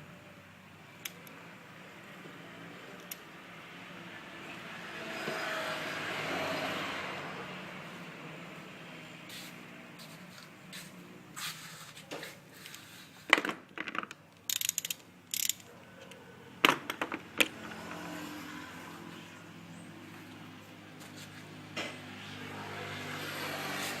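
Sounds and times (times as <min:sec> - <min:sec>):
metal tools clinking: 0:13.8 - 0:15.8.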